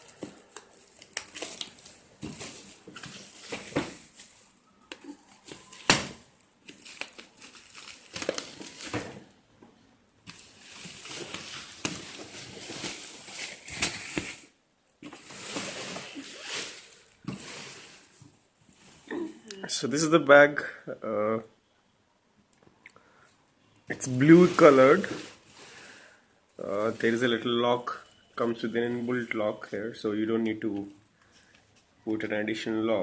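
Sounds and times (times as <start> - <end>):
plastic wrap crinkling and tearing: 0.0 - 9.3, 10.2 - 18.2.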